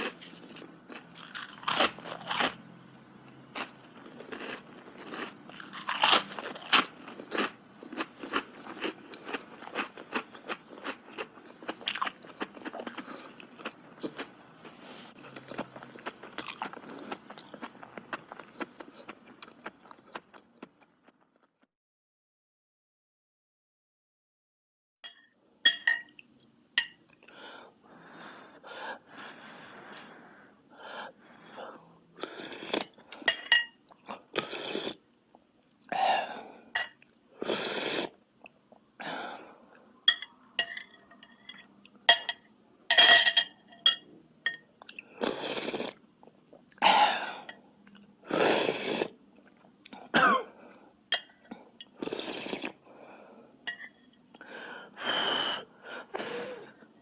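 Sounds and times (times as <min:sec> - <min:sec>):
hissy mouth eating noises: 0:52.0 - 0:52.8.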